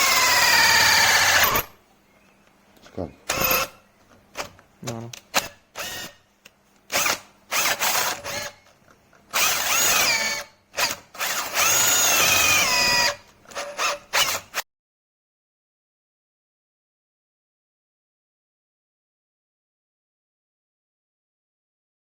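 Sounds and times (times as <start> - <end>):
cordless drill motor whining: 0.0 - 1.7, 3.3 - 3.8, 5.8 - 6.2, 6.9 - 8.7, 9.3 - 14.6.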